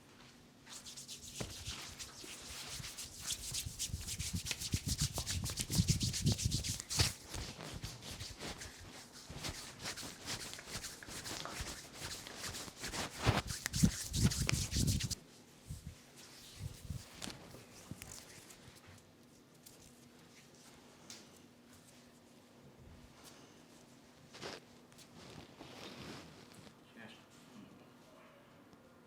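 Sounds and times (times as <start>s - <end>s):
hands rubbing hair: 0.7s - 15.2s, 16.4s - 18.6s.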